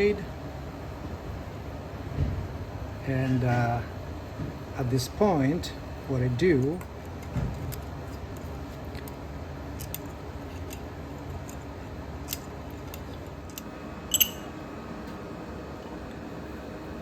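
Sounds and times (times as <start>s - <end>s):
low shop hum: 0.0s - 17.0s
metal parts clicking and tapping: 6.6s - 14.5s
sharp metallic clink: 14.1s - 14.6s.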